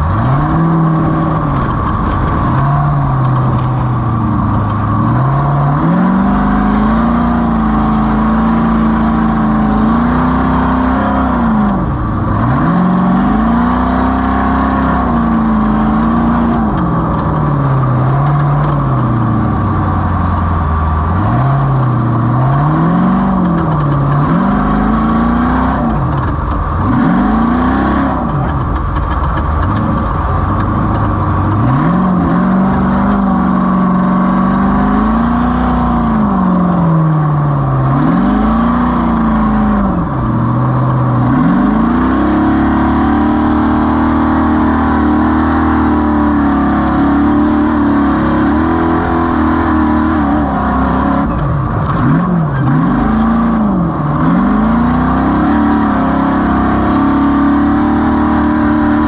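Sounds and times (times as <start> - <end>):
rattle: 0.0 - 5.8, 15.1 - 33.8
wind noise: 0.0 - 7.3
race vehicle engine revving: 0.0 - 59.0.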